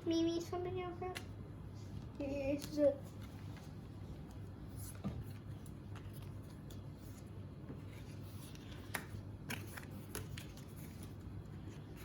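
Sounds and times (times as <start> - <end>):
cards sliding and rustling: 2.5 - 12.0.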